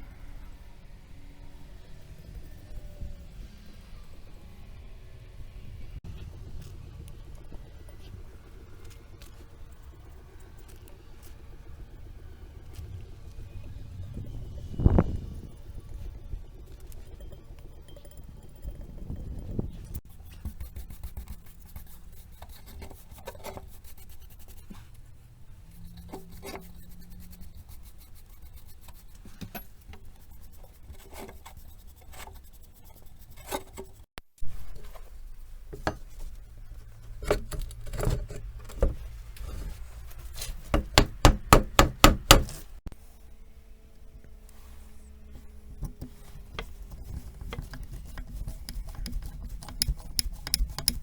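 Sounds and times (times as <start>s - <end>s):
tapping and scraping on shovel: 37.0s - 42.7s, 45.8s - 51.0s
loud knocks on metal: 40.7s - 42.6s.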